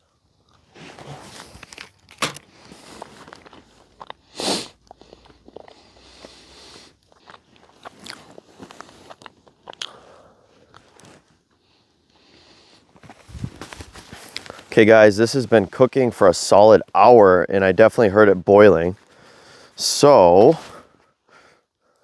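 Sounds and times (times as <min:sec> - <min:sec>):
person chewing cheese: 0:00.0 - 0:00.8, 0:01.7 - 0:13.3.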